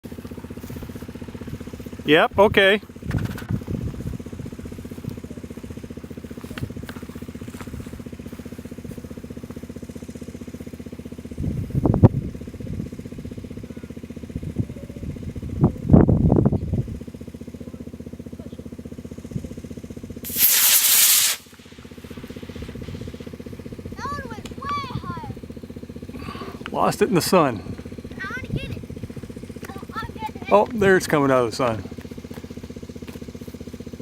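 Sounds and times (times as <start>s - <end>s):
engine idling: 0.0s - 34.0s
rocket motor igniting hiss: 19.3s - 24.5s.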